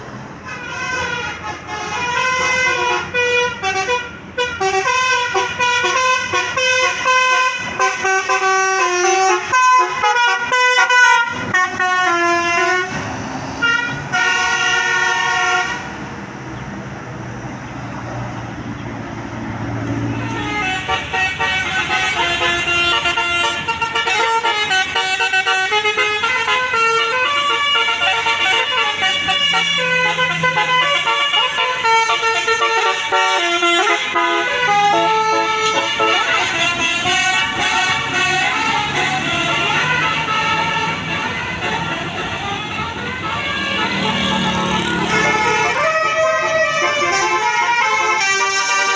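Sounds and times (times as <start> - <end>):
traffic: 0.0 - 48.9
musical air horn melody: 0.4 - 13.0, 13.6 - 15.9, 20.1 - 48.9.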